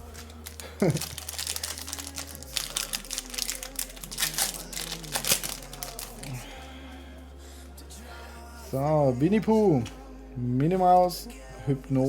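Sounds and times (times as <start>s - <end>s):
plastic wrapper crinkling: 0.0s - 6.4s.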